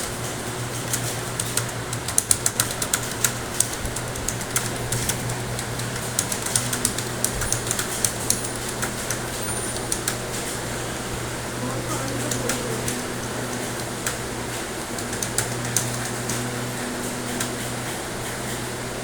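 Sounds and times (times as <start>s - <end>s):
keyboard typing: 0.2s - 17.7s.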